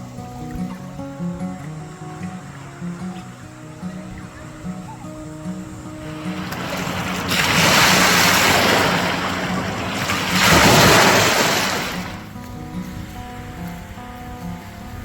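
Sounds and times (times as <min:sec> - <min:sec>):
waves breaking on beach: 0:02.4 - 0:14.9.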